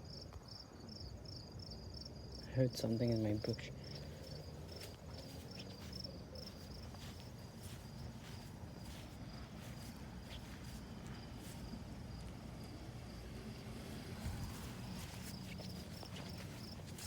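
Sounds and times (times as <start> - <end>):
crickets chirping: 0.0 - 17.0
low steady rumble: 7.2 - 17.0.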